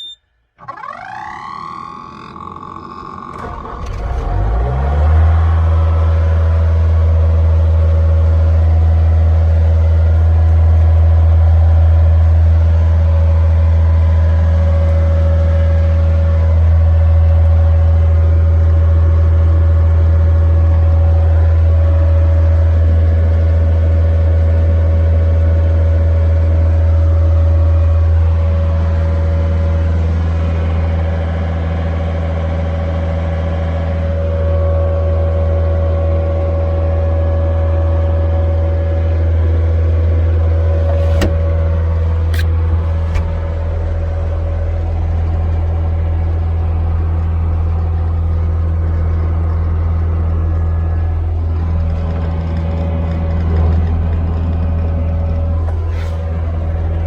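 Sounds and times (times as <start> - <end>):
diesel engine running: 2.7 - 57.0.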